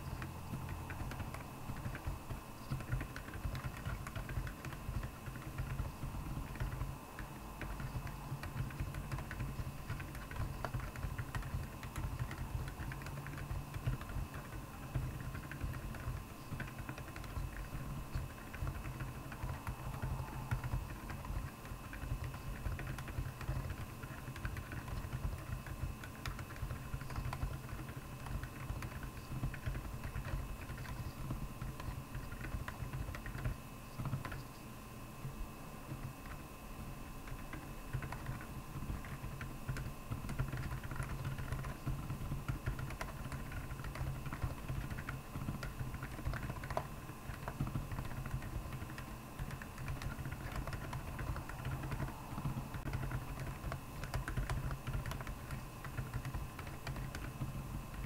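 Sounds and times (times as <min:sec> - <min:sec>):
mechanical keyboard typing: 0:00.0 - 0:34.5, 0:35.9 - 0:36.4, 0:37.2 - 0:58.0.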